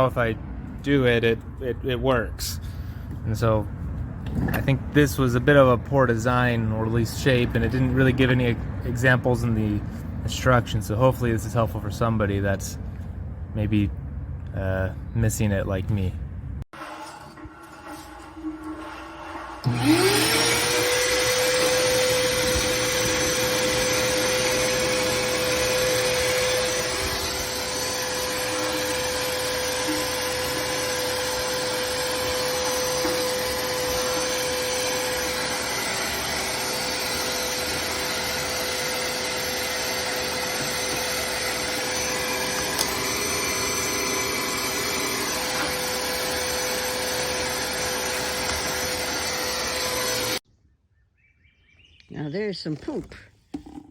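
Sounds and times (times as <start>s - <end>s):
shop vacuum motor running: 16.8s - 50.4s.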